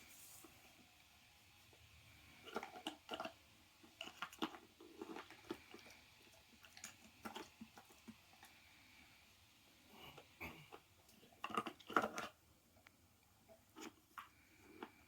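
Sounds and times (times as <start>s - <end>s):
dog crunching treats: 2.3s - 8.6s, 10.7s - 12.4s.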